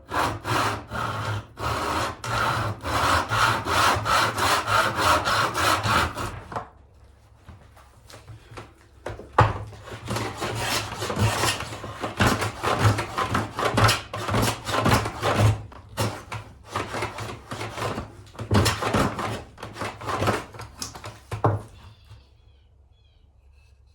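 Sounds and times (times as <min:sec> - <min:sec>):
rasping strokes on wood: 0:00.0 - 0:06.5, 0:09.8 - 0:21.7
sawing wood: 0:00.0 - 0:06.7, 0:09.4 - 0:21.8.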